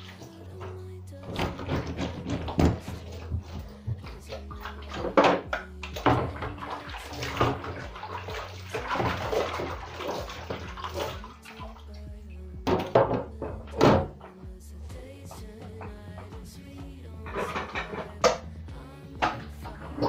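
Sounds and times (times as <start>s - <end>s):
water splashing and sloshing: 0.0s - 20.0s
plastic parts knocking: 1.2s - 6.6s, 12.7s - 14.5s, 15.3s - 18.5s.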